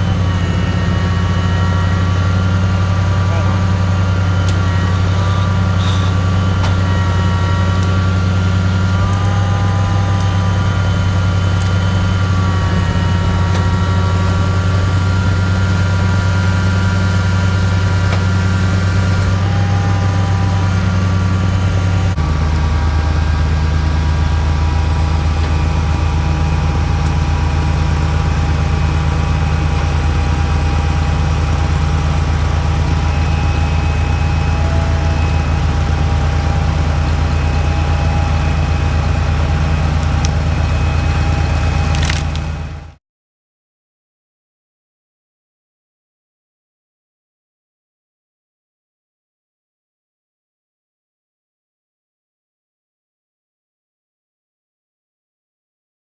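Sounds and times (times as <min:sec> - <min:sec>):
high hydraulic whining: 0:00.0 - 0:43.0
truck engine running: 0:00.0 - 0:43.0.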